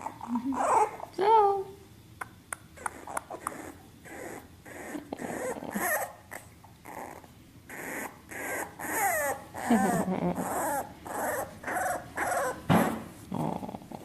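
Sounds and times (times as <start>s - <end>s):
dog whimpering: 0.0s - 1.2s, 2.8s - 12.6s
dog grunting: 2.8s - 14.0s.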